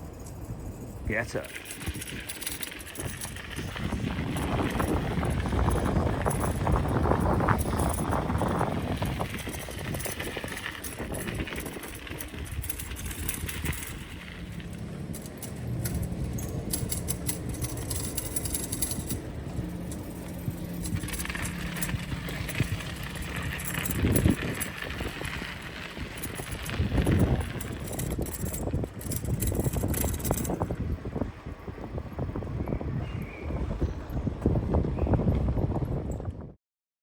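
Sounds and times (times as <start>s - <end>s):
steady low hum: 0.0s - 31.6s
wind buffeting microphone: 0.0s - 36.6s
tyre rumble on path: 1.5s - 30.9s.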